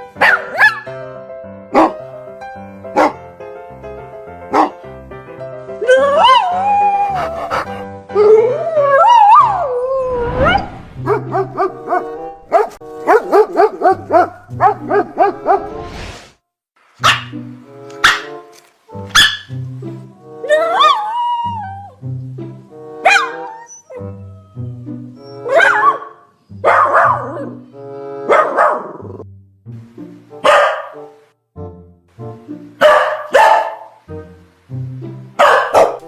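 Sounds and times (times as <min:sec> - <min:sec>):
background music: 0:00.0 - 0:16.1, 0:16.8 - 0:36.0
dog barking: 0:00.2 - 0:00.9, 0:01.7 - 0:02.0, 0:03.0 - 0:03.2, 0:04.5 - 0:04.8, 0:07.1 - 0:07.8, 0:11.0 - 0:15.7, 0:17.0 - 0:17.4, 0:18.0 - 0:18.4, 0:19.1 - 0:19.5, 0:23.0 - 0:23.5, 0:25.4 - 0:27.6, 0:28.3 - 0:29.1, 0:30.4 - 0:31.2, 0:32.8 - 0:34.0, 0:35.4 - 0:36.0.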